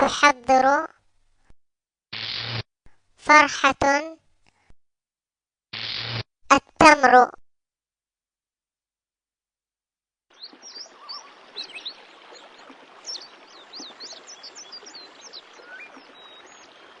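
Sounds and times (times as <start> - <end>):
birds chirping and singing: 10.4 - 17.0.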